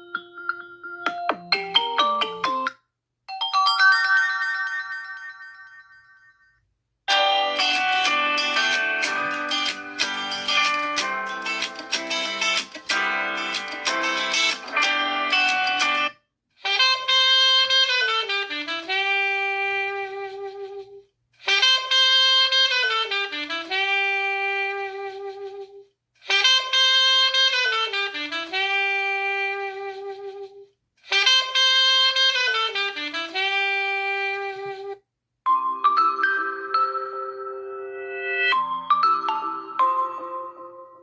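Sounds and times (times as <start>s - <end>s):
jazzy saxophone-like ringtone: 13.4s - 25.7s, 26.3s - 40.8s.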